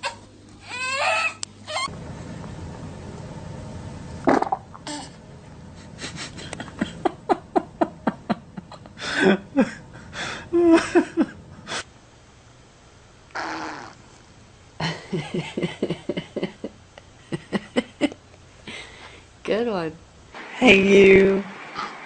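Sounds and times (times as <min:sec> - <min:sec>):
person laughing: 0:05.8 - 0:11.8, 0:14.8 - 0:18.9.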